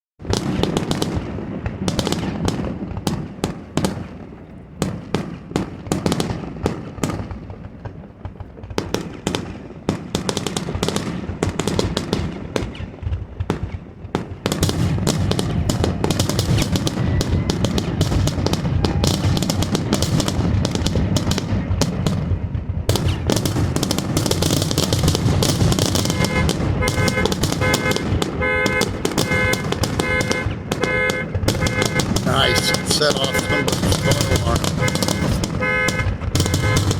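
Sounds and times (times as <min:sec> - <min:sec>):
bangs and crackles: 0:00.2 - 0:36.9
fireworks bursting: 0:00.2 - 0:36.9
pulsing alarm tone: 0:31.0 - 0:36.9.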